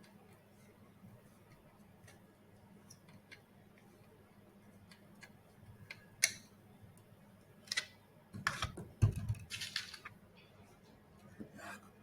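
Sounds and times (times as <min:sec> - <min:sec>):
plastic parts clicking and knocking: 0:07.7 - 0:10.1.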